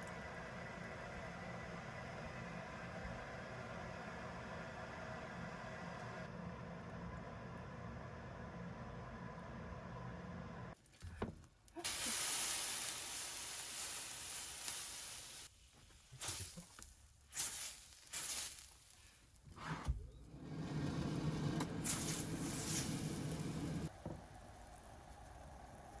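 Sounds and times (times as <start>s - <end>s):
food sizzling in hot oil: 11.8s - 15.5s, 17.3s - 19.0s, 21.8s - 23.5s.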